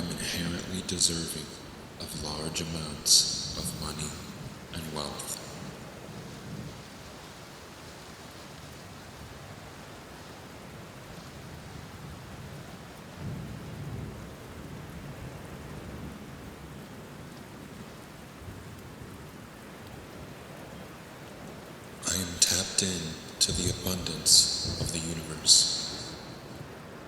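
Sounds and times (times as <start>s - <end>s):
steady rain falling: 0.0s - 27.0s
low rumble of thunder: 11.6s - 19.3s.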